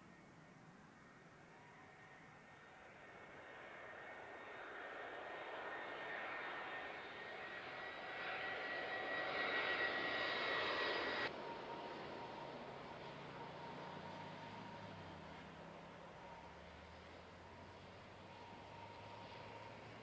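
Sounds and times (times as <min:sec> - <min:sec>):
high engine whine: 0:00.0 - 0:20.0
jet engines roaring: 0:00.9 - 0:20.0.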